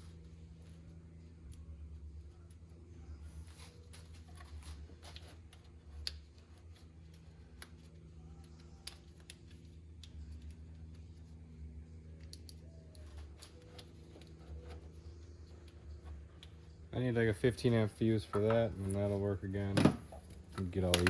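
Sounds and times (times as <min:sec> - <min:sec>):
faint steady low hum: 0:00.0 - 0:21.0
clicks and taps of hand work: 0:20.6 - 0:21.0.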